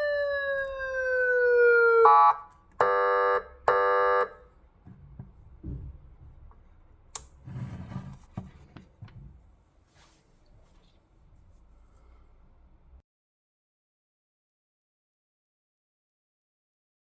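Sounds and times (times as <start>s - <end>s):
electronic siren horn blast: 2.0s - 4.4s.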